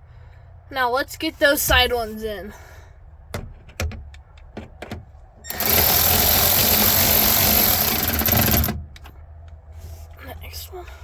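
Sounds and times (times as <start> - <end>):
handling clicks and knocks: 3.3 - 5.3
power drill driving screw: 5.5 - 8.8.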